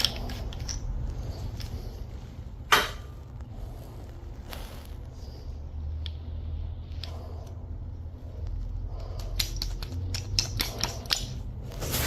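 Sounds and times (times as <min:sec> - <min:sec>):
screwdriver clicking and scraping metal: 0:00.0 - 0:01.8, 0:09.0 - 0:11.5
steady low hum: 0:00.0 - 0:12.0.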